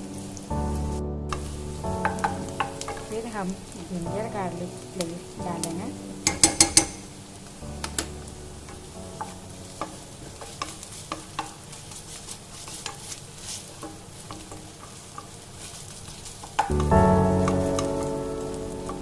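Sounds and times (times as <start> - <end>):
food sizzling in butter: 0.0 - 19.0
spoon scraping and tapping pan: 1.4 - 3.6, 5.6 - 7.1, 7.8 - 18.0.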